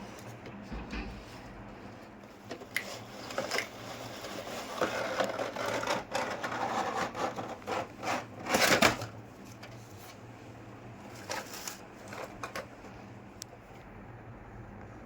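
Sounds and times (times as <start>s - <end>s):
scraping and rustling: 0.2s - 10.2s, 11.1s - 13.0s.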